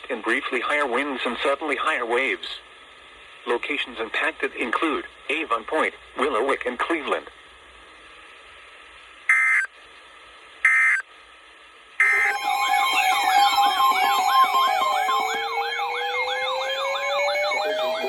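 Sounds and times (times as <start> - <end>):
electronic sirens wailing: 9.3 - 9.7, 12.0 - 18.0
electronic alert beeps: 12.0 - 18.0.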